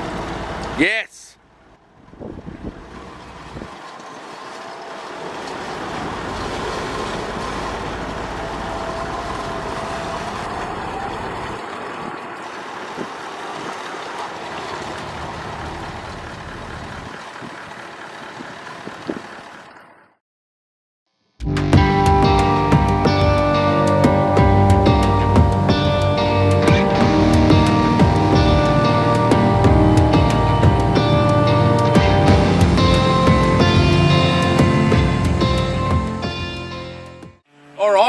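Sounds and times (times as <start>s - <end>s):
vehicle engine and tyre noise: 0.0s - 20.2s, 22.4s - 36.6s.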